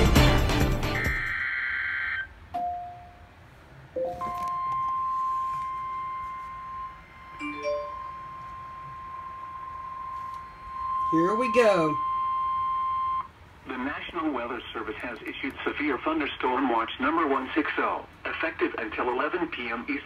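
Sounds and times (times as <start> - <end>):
intro music: 0.0 - 1.3
short beeps: 4.0 - 13.3
steady alert tone: 5.0 - 8.8, 10.5 - 13.2.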